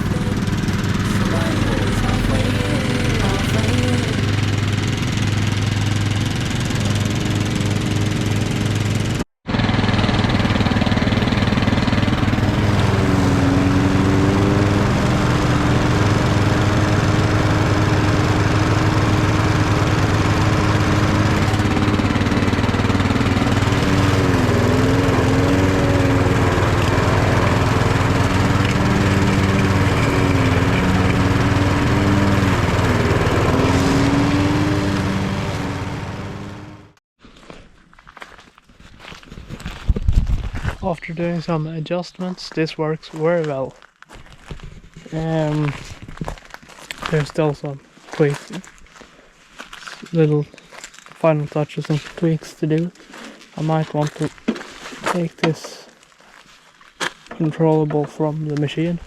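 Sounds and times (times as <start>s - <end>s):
garden tractor engine: 0.0s - 37.0s, 44.4s - 48.8s, 49.6s - 56.4s, 57.0s - 59.0s
mower engine running: 0.0s - 37.0s, 51.2s - 55.9s, 57.3s - 59.0s.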